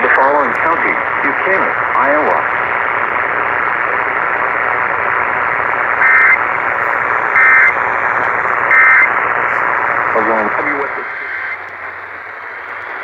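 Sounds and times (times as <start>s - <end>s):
radio hiss: 0.0s - 13.0s
warbling digital data tone: 6.0s - 13.0s.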